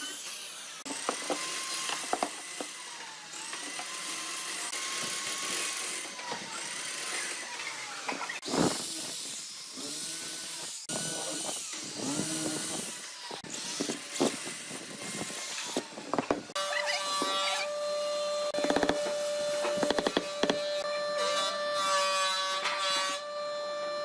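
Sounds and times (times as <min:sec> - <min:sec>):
power tools cutting wood: 0:00.0 - 0:24.0
sharp knocks: 0:18.6 - 0:19.1, 0:19.7 - 0:20.6.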